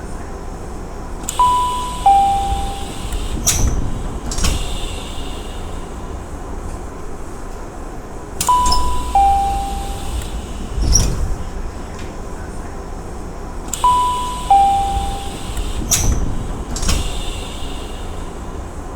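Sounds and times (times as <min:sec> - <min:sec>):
low rumble of train car: 0:00.0 - 0:18.9
two-note door chime: 0:01.3 - 0:03.7, 0:08.4 - 0:10.4, 0:13.8 - 0:15.6
sliding doors thudding: 0:01.3 - 0:18.9.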